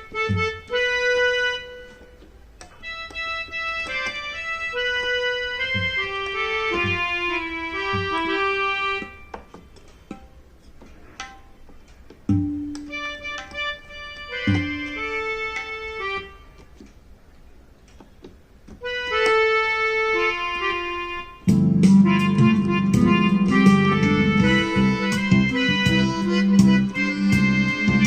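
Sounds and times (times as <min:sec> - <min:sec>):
keyboard playing sustained notes: 0:00.0 - 0:10.4, 0:12.3 - 0:16.7, 0:18.8 - 0:28.0
sharp regular beats: 0:12.2 - 0:15.2, 0:21.4 - 0:28.0.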